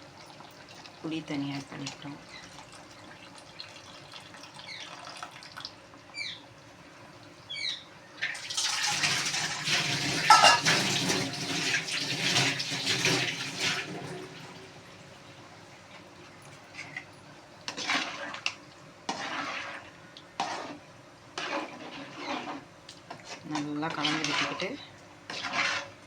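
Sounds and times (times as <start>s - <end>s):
water splashing and pouring: 8.4s - 14.6s.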